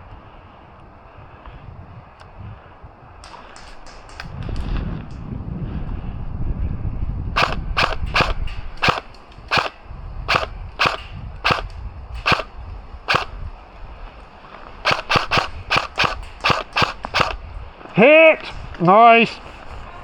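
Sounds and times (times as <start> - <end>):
airsoft gun shots: 3.2 - 4.7, 7.4 - 13.6, 14.8 - 17.6.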